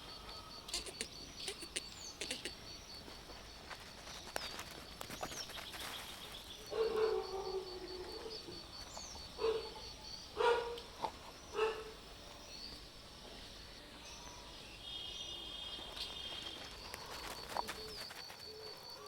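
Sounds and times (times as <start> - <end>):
faint high chirps: 0.0 - 19.0
cats meowing: 0.2 - 2.7.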